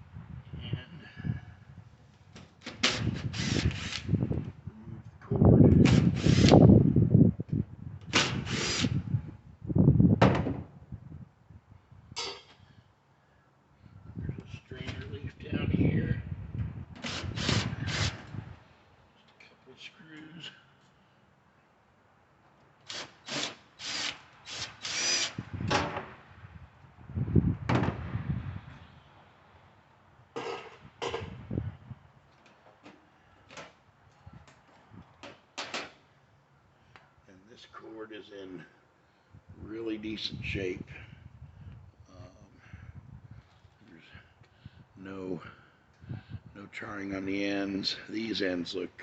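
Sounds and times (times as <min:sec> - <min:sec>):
cordless drill running: 0:03.3 - 0:04.1, 0:05.9 - 0:06.6, 0:08.3 - 0:09.0, 0:17.0 - 0:18.1, 0:22.9 - 0:25.4.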